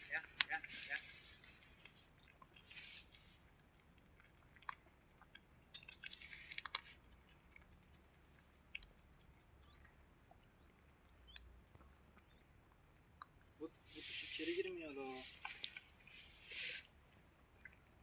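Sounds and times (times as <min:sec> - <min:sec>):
soft rustles: 0:00.0 - 0:03.5
cat chewing food: 0:00.2 - 0:13.6.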